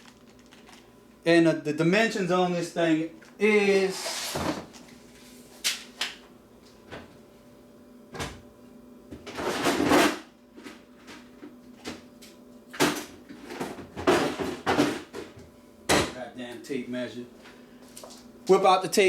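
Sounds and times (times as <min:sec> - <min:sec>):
objects knocking and clattering: 0:12.8 - 0:16.2.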